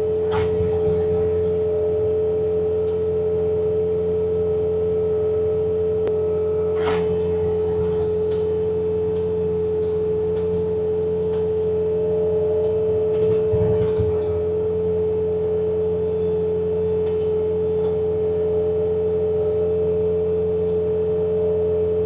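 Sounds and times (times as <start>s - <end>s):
diesel engine drone: 0.0s - 22.0s
snowblower high-pitched whine: 0.0s - 22.0s.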